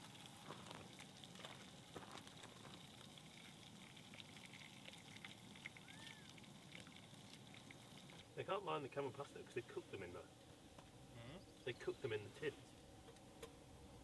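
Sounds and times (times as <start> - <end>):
food sizzling: 0.0 - 8.3.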